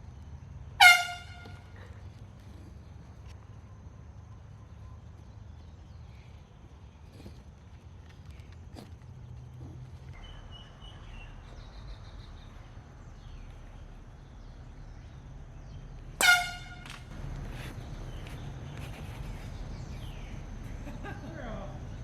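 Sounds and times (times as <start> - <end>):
air horn blast: 0.8 - 1.9, 16.2 - 17.1.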